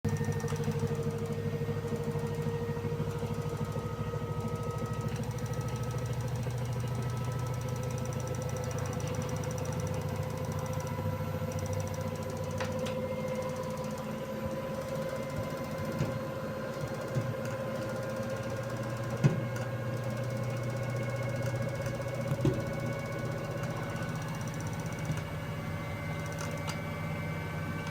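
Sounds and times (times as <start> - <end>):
washing machine drum knocking: 19.1 - 25.6.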